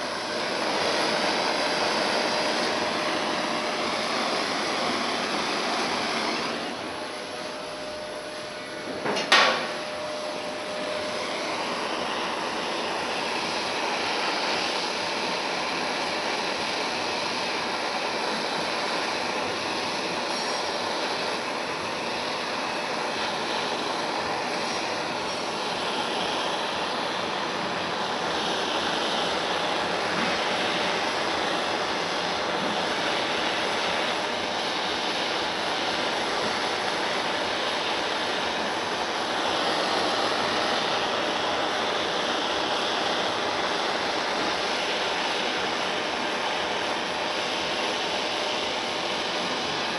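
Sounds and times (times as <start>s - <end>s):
gas torch flame hissing: 0.0s - 49.9s
sharp pop: 9.0s - 9.8s.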